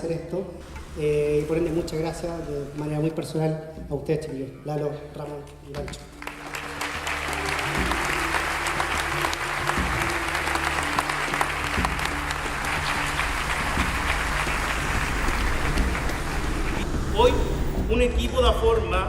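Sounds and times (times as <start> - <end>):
background music: 0.0 - 19.0
audience applauding: 5.7 - 17.4.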